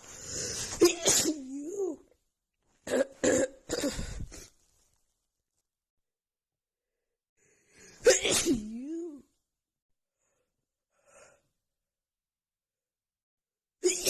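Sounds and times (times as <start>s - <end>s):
person sneezing: 0.3s - 2.0s, 2.9s - 4.5s, 8.0s - 9.2s.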